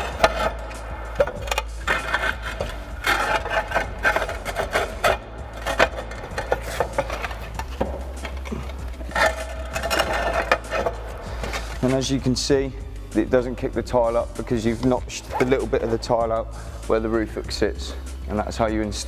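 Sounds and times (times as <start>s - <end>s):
roof tiles scraping and clacking: 0.0s - 12.2s.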